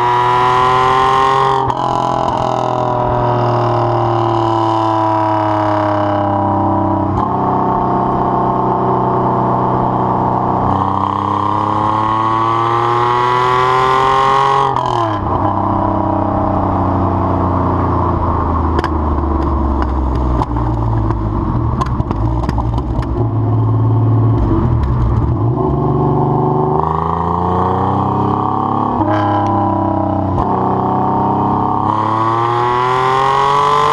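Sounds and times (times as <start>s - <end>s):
car exhaust under load: 0.0s - 33.6s
exhaust crackles and pops: 18.4s - 26.0s.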